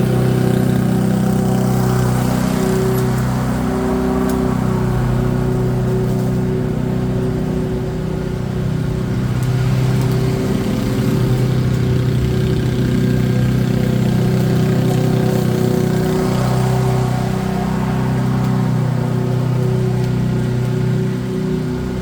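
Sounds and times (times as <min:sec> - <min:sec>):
small petrol engine running: 0:00.0 - 0:22.0.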